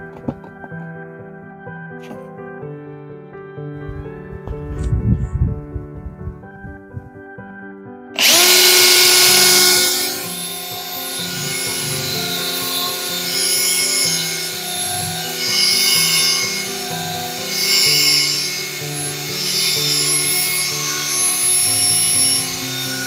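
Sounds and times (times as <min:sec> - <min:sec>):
background music: 0:00.0 - 0:23.0
power drill polishing: 0:08.2 - 0:23.0.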